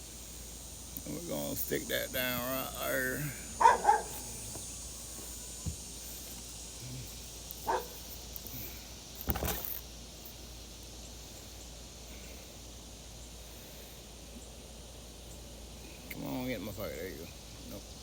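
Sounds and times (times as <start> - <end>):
outdoor background hiss: 0.0 - 18.0
dog bark: 3.6 - 4.4, 7.6 - 8.0
knocks and rustles: 9.2 - 9.8.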